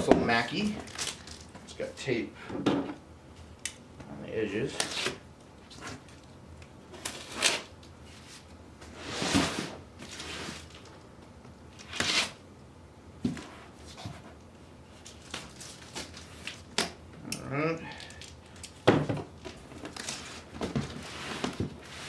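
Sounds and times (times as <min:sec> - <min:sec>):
packaging rustling: 0:15.0 - 0:16.7.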